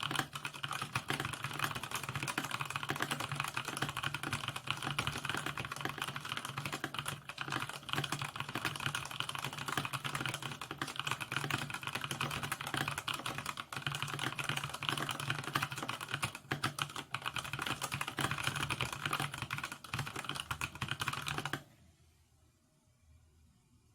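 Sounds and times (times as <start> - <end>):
mechanical keyboard typing: 0.0 - 21.7.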